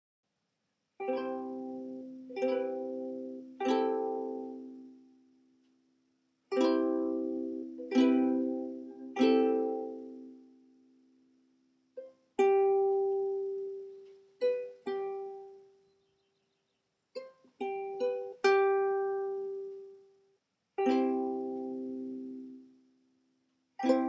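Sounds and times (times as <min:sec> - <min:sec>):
slow plucked melody: 0:01.0 - 0:05.7, 0:06.5 - 0:11.1, 0:12.0 - 0:15.8, 0:17.2 - 0:20.1, 0:20.8 - 0:22.8, 0:23.8 - 0:24.0.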